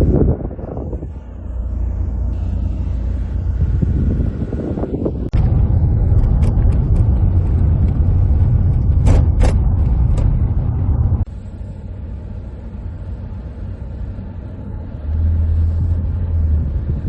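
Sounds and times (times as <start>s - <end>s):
car road and engine rumble: 0.0s - 17.0s
short knocks or rattles: 8.7s - 10.5s.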